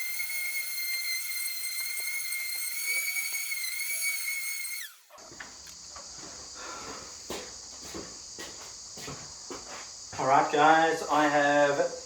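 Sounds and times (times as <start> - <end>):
electric sander motor whining: 0.0 - 5.4
crickets chirring: 5.0 - 12.0.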